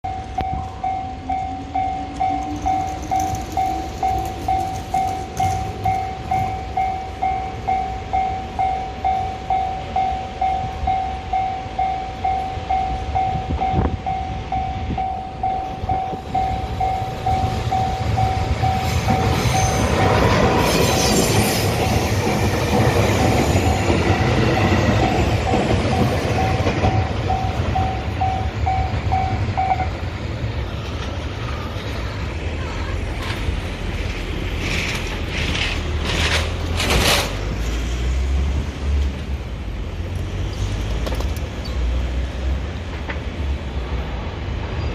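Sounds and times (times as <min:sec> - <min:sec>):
level crossing alarm dinging: 0:00.0 - 0:20.2, 0:23.2 - 0:30.0
locomotive engine rumble: 0:00.1 - 0:44.9
train wheel noise: 0:00.1 - 0:44.9.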